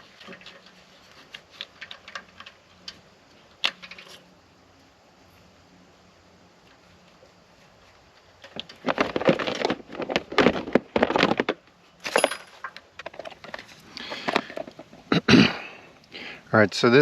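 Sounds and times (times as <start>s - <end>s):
small parts and tools clattering: 0.0s - 4.3s, 8.1s - 15.2s.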